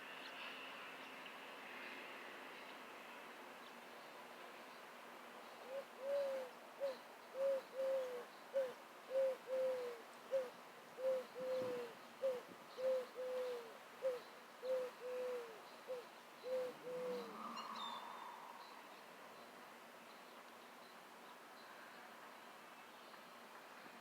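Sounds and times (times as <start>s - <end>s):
bird cooing: 5.6s - 17.9s.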